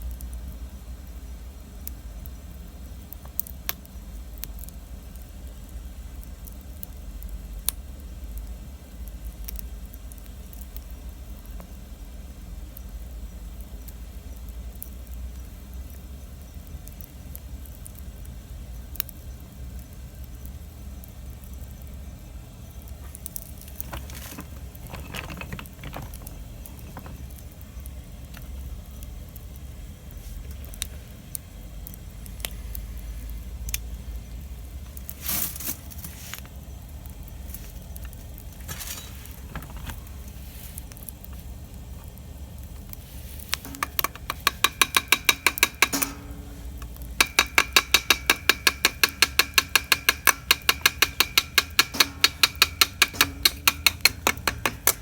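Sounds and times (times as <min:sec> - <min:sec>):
wood fire crackling: 0:00.0 - 0:55.0
regular ringing clicks: 0:43.6 - 0:55.0.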